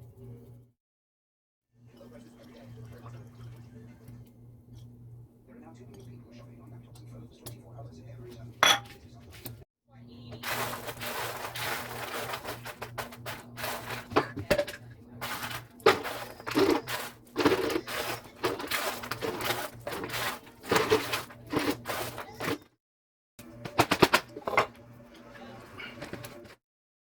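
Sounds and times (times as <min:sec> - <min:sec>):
bread scraping and crackling: 0:10.4 - 0:14.4, 0:15.1 - 0:22.6.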